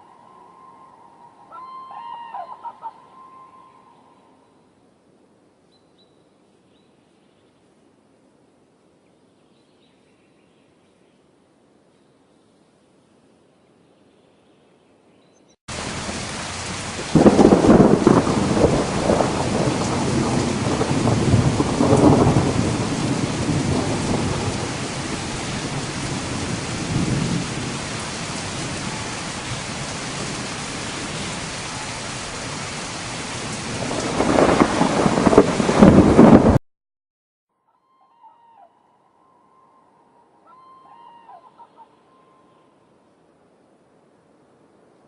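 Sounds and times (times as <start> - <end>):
heavy rain: 15.7 - 36.6
rolling thunder: 15.7 - 36.6.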